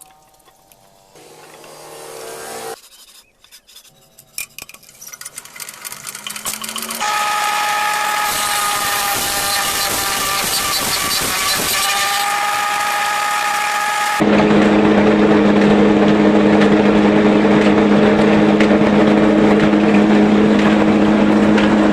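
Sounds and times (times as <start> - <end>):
electric power tool motor: 1.2 - 2.8, 5.4 - 14.4
clicks and rattles: 3.4 - 7.0.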